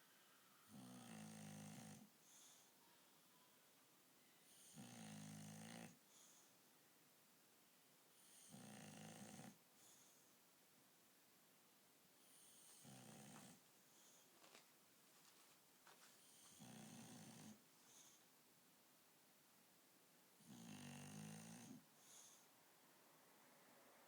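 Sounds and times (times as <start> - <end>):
faint high hiss: 0.0 - 24.0
dog snoring: 0.7 - 2.7, 4.5 - 6.5, 8.2 - 10.2, 12.2 - 14.2, 16.2 - 18.2, 20.4 - 22.5.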